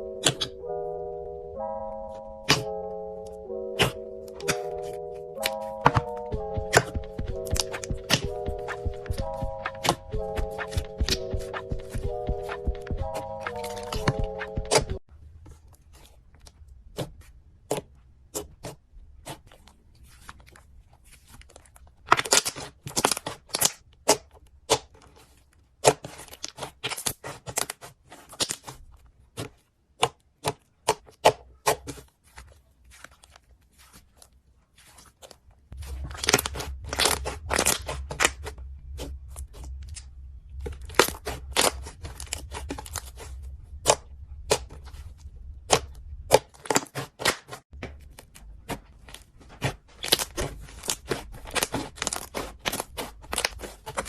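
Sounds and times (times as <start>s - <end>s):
slime popping and crackling: 21.6s - 23.8s, 35.8s - 39.8s, 40.6s - 44.9s, 49.7s - 54.0s.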